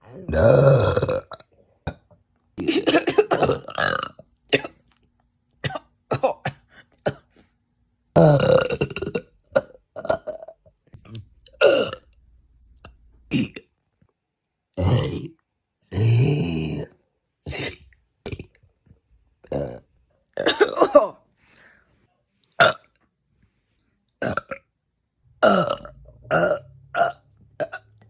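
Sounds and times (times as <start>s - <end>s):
person burping loudly: 0.1s - 4.8s, 8.2s - 12.1s, 13.3s - 13.7s, 14.8s - 18.6s, 19.4s - 21.2s, 22.6s - 23.0s, 24.2s - 24.7s, 25.4s - 27.9s.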